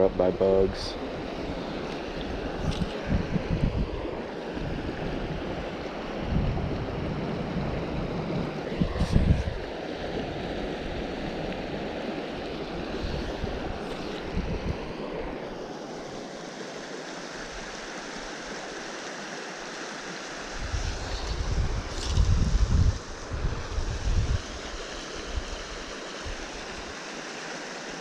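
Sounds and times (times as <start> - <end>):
rushing mountain stream: 0.0 - 28.0
wind buffeting microphone: 2.1 - 9.7, 12.7 - 15.1, 20.5 - 26.9.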